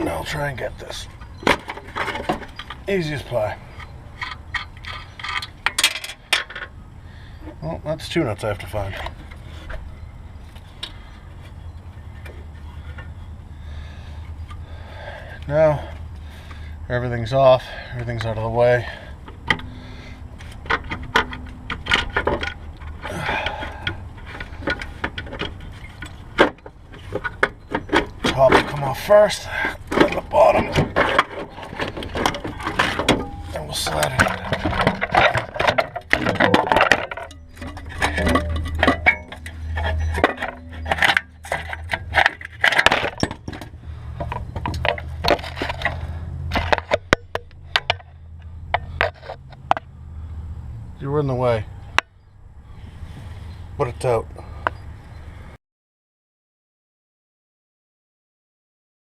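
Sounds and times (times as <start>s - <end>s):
metal clinks knocks and scrapes: 0.0s - 6.8s, 17.4s - 49.9s
steady low hum: 0.0s - 55.5s.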